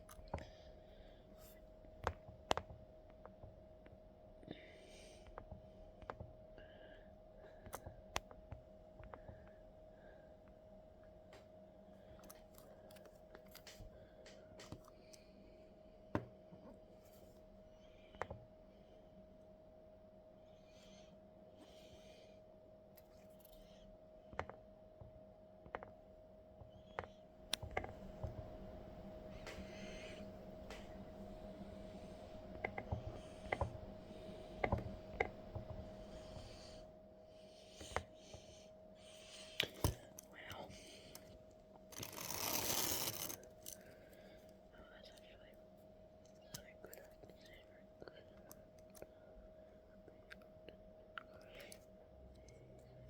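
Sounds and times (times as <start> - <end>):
faint steady hum: 0.0 - 53.0
low hum: 26.0 - 45.0.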